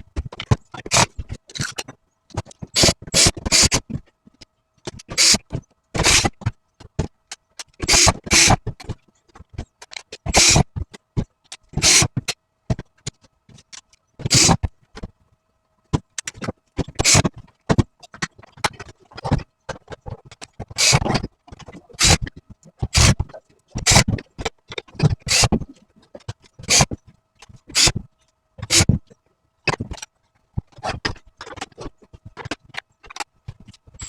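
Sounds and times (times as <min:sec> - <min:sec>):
hard plastic parts clicking and scraping: 0:00.0 - 0:15.2, 0:15.8 - 0:34.0.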